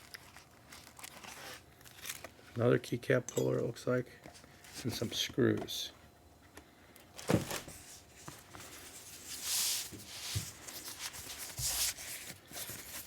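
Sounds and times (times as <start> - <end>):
packing material rustling: 0.0 - 2.4, 7.2 - 13.0
packaging thump: 7.2 - 7.8.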